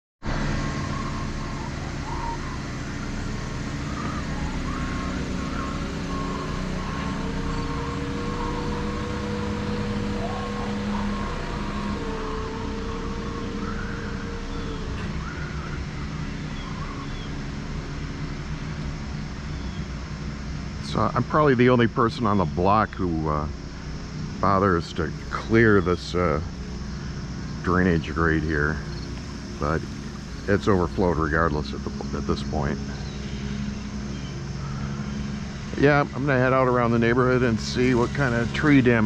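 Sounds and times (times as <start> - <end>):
truck engine running: 0.2 - 39.0
high held tone: 0.5 - 17.3
faint chirps: 0.6 - 17.4, 22.4 - 39.0.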